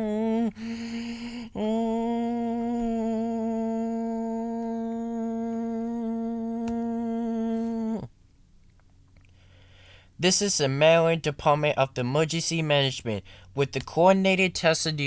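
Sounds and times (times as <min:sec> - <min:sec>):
person humming a long note: 0:00.0 - 0:08.1.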